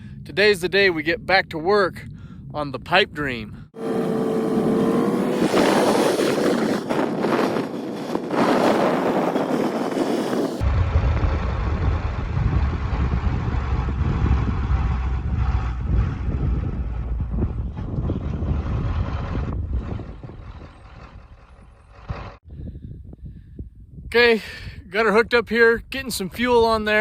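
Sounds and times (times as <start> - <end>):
vehicle engine rumble: 3.5 - 22.4.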